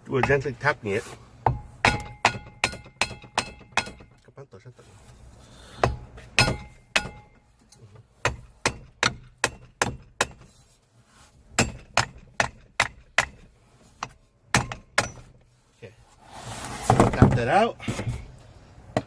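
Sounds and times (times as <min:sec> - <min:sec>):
hammer tapping on metal: 0:01.4 - 0:04.1.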